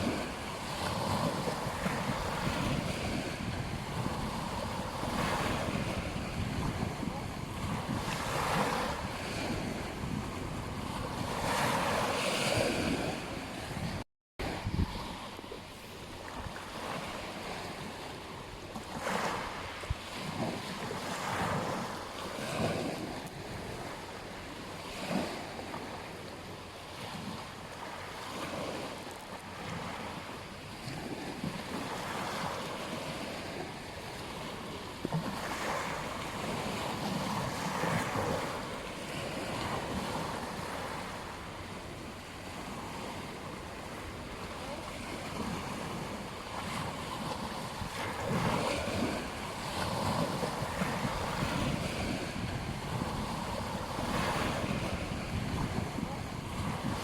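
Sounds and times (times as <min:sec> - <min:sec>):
wind buffeting microphone: 0:00.0 - 0:15.6, 0:30.8 - 0:57.0
ocean waves breaking on beach: 0:00.0 - 0:57.0.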